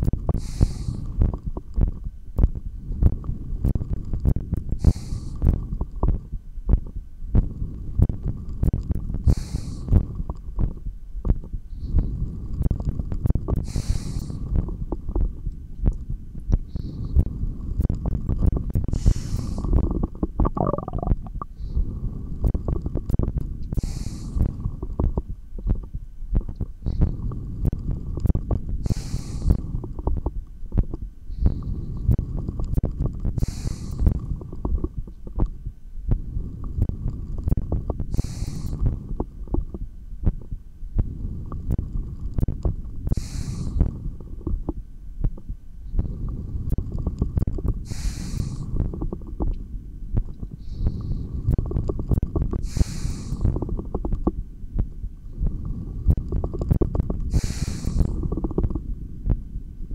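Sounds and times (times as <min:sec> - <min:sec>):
stomach growl: 0:00.0 - 0:59.4
low rumble: 0:00.0 - 0:59.9
breathing through stethoscope: 0:00.3 - 0:01.4, 0:04.8 - 0:05.7, 0:09.2 - 0:10.2, 0:11.7 - 0:12.7, 0:13.6 - 0:14.8, 0:16.7 - 0:17.9, 0:18.9 - 0:20.0, 0:20.6 - 0:22.7, 0:23.7 - 0:24.8, 0:28.8 - 0:30.0, 0:31.3 - 0:34.7, 0:36.2 - 0:39.1, 0:41.0 - 0:44.2, 0:45.9 - 0:49.2, 0:50.4 - 0:53.8, 0:55.3 - 0:58.7.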